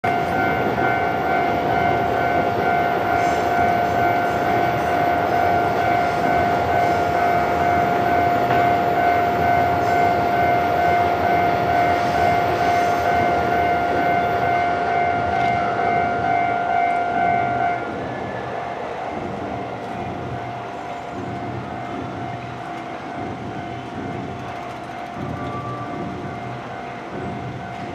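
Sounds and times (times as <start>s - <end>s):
level crossing electronic bell: 0.0s - 17.8s
passing train rumble: 0.0s - 27.9s.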